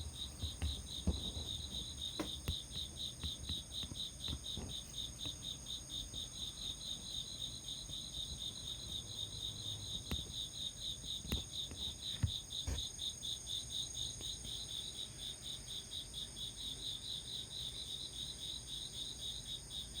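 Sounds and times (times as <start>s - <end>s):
soft knocks: 0.0s - 4.8s
crickets chirping: 0.0s - 20.0s
high insect trill: 0.0s - 20.0s.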